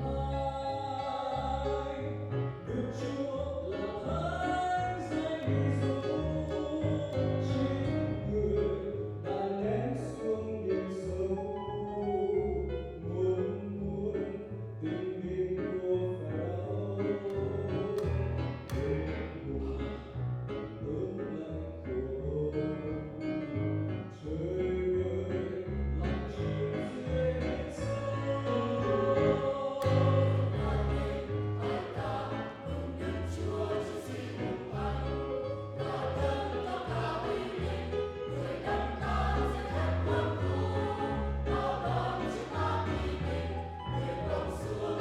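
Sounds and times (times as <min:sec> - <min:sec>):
voices singing a hymn: 0:00.0 - 0:02.3, 0:02.9 - 0:09.7, 0:25.5 - 0:45.0
keyboard accompaniment: 0:00.0 - 0:21.9, 0:22.6 - 0:45.0.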